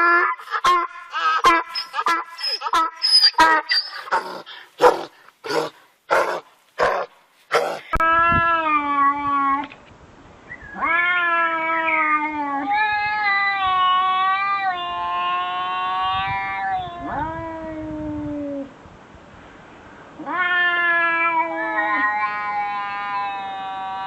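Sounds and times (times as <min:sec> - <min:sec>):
pet animal calling: 0:00.0 - 0:08.0.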